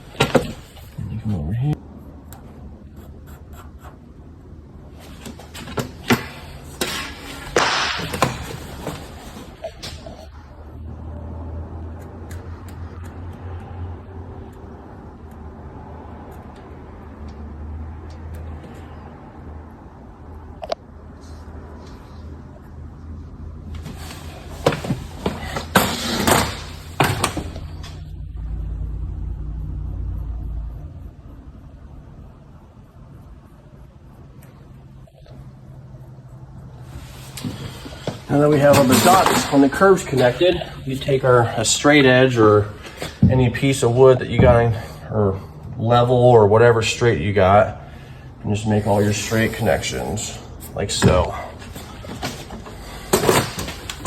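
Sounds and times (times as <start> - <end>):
marker rubbing stroke: 2.9 - 4.0
sharp knocks and clatter: 5.2 - 9.5
steady low rumble: 27.6 - 36.9.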